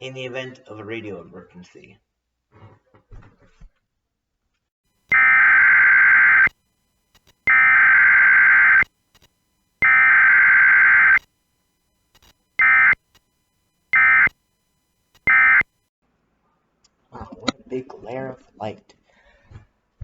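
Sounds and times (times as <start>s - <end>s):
digital alert data bursts: 5.1s - 6.5s, 7.5s - 8.8s, 9.8s - 11.2s, 12.6s - 13.0s, 13.9s - 14.3s, 15.2s - 15.6s.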